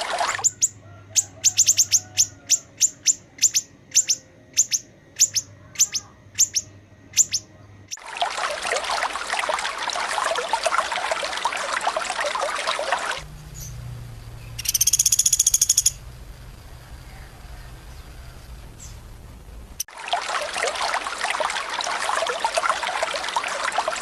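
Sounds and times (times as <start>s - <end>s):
running water rushing: 0.0s - 0.5s, 7.9s - 24.0s
bird sharp high calls: 0.0s - 7.5s, 14.4s - 16.0s
rapid buzzing trill: 13.2s - 19.8s
low hum: 13.2s - 19.9s.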